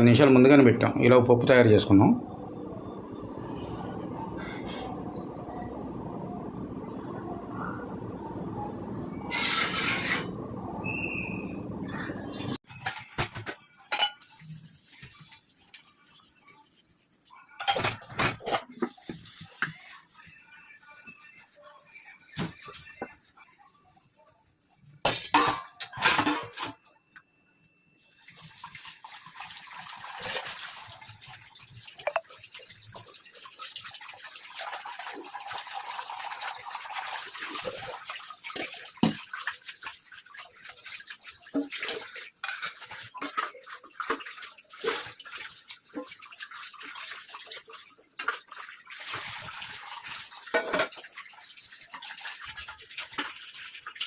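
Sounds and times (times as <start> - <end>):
dishes and utensils clinking: 11.9 - 16.4, 17.5 - 20.4, 25.0 - 27.0, 41.5 - 44.2, 50.5 - 51.0
water running from a tap: 28.1 - 54.0.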